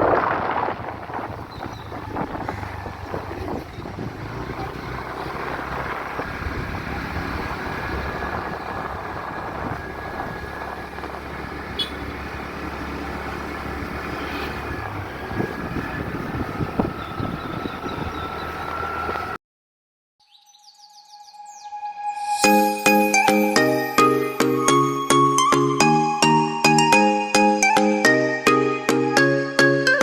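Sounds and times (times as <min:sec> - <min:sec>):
motorcycle engine running: 0:00.0 - 0:19.4.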